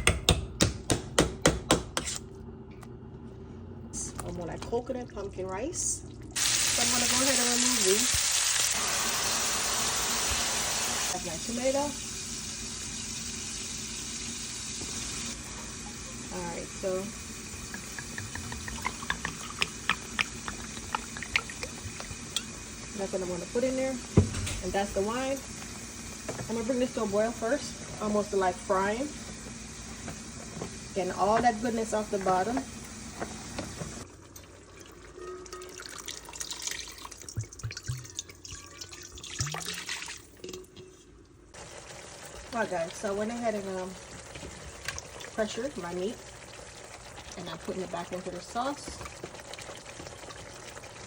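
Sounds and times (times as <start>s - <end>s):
water running and splashing: 17.5s - 23.0s, 35.8s - 40.3s
water dripping: 17.7s - 22.5s, 34.3s - 40.8s.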